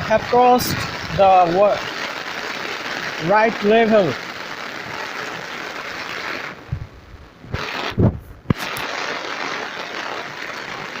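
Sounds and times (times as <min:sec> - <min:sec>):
heavy rain: 0:00.0 - 0:11.0
low thumps and knocks: 0:06.7 - 0:08.6.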